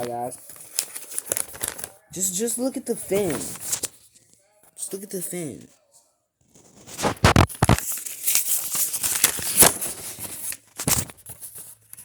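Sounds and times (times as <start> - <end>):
packaging rustling and crinkling: 0.0 - 2.0, 6.5 - 11.8.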